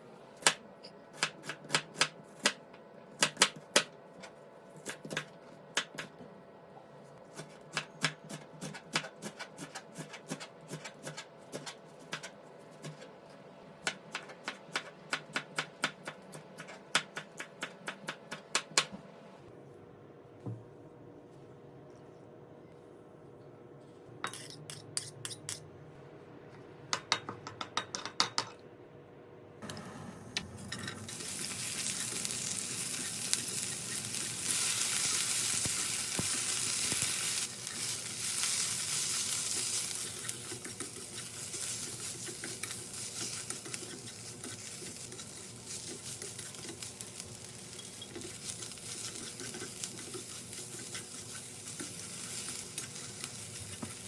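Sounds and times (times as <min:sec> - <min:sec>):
food sizzling in hot oil: 0:31.0 - 0:54.0.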